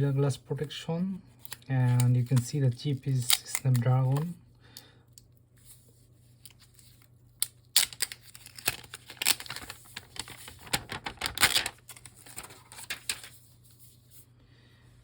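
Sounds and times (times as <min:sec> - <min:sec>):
crinkly rustles: 0:08.1 - 0:14.2.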